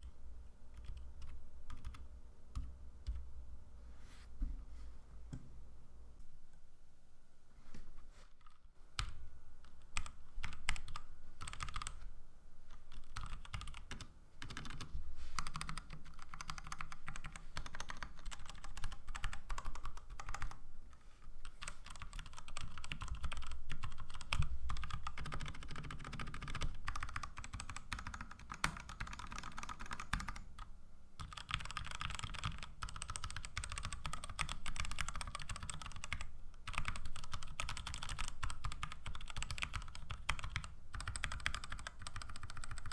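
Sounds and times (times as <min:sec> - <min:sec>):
fast typing on mechanical keyboard: 0:10.0 - 0:12.0, 0:12.9 - 0:20.6, 0:21.5 - 0:30.4, 0:31.2 - 0:42.9.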